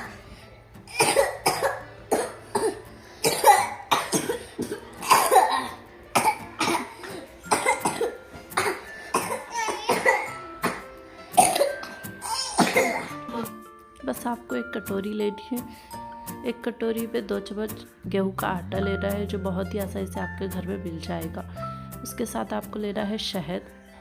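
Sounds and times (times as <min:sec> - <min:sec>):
person coughing: 0:00.9 - 0:13.5.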